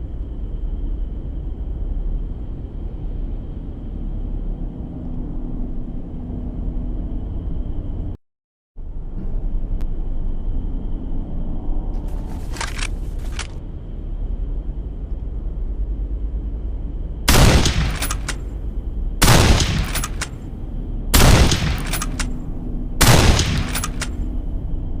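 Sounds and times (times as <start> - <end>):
shotgun action clicks: 12.4 - 13.5, 17.3 - 18.5, 19.2 - 20.4, 21.2 - 22.3, 23.0 - 24.2
shotgun shots: 17.3 - 18.5, 19.2 - 20.4, 21.2 - 22.3, 23.0 - 24.2.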